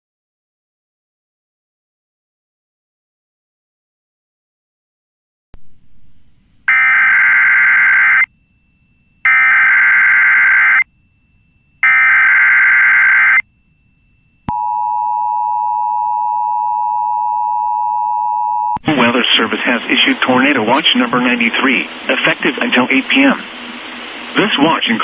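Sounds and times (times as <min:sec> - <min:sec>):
warbling data tones: 0:05.7 - 0:15.0.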